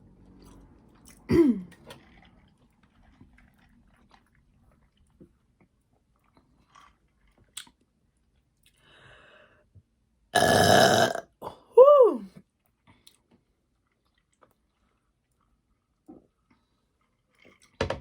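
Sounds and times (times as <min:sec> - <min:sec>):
chewing with wet smacks: 0:12.9 - 0:17.8.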